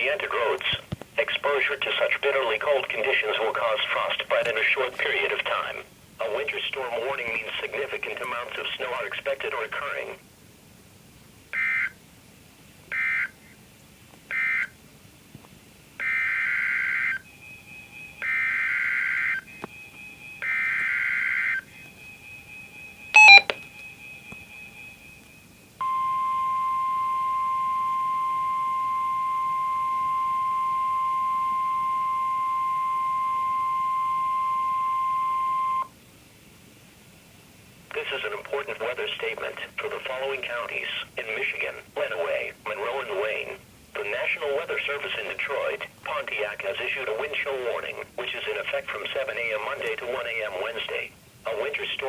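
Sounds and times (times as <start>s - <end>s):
steady warning alarm tone: 16.0s - 35.9s
data bursts: 23.2s - 23.6s.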